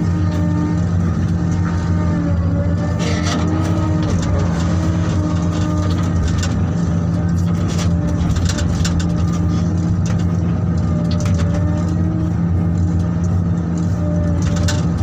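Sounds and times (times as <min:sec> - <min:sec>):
heavy machinery engine drone: 0:00.0 - 0:15.0
metal clanks and rattles: 0:02.9 - 0:12.0, 0:12.8 - 0:15.0.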